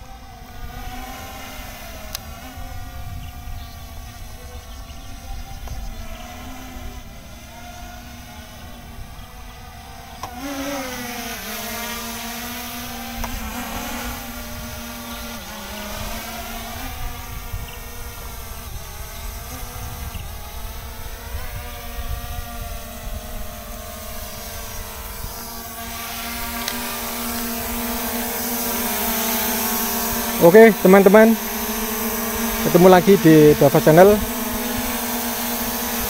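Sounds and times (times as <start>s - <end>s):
drone propellers whining: 0.0s - 36.0s
wind rumbling on microphone: 2.0s - 9.8s, 15.9s - 28.8s.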